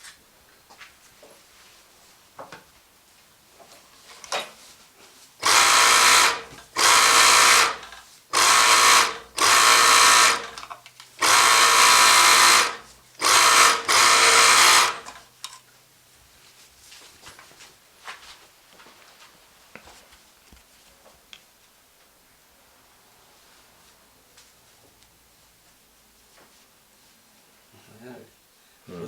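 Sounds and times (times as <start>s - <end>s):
sewing machine running in bursts: 5.4s - 15.2s.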